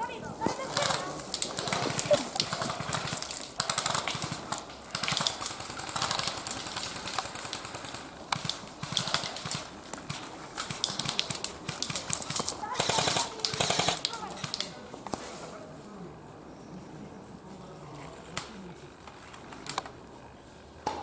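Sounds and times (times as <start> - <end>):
footsteps on dry leaves and twigs: 0.0 - 2.7
clothing and gear rustling: 0.0 - 3.2.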